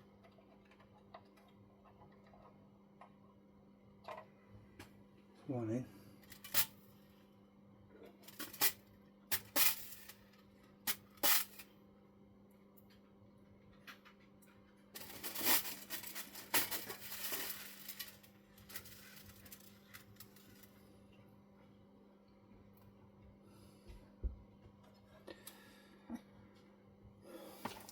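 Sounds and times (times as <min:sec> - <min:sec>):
rummaging among small parts: 0:15.0 - 0:20.7
small metal parts clinking: 0:15.0 - 0:20.7.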